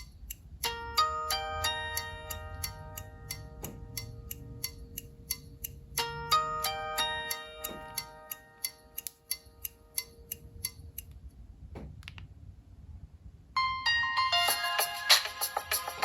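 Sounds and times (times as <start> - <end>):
clock ticking ringtone: 0.0 - 11.0
chime notes: 6.0 - 8.9.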